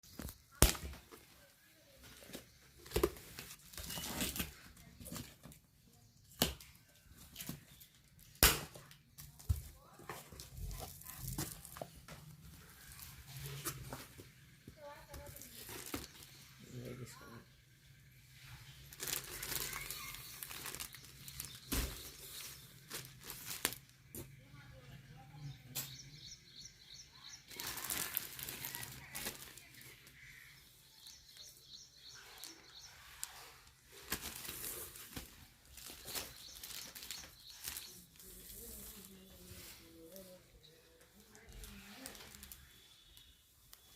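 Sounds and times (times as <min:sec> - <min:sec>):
plastic packaging crinkling: 0:14.8 - 0:16.4, 0:18.7 - 0:24.0, 0:27.5 - 0:30.4, 0:32.2 - 0:39.4, 0:41.2 - 0:43.9.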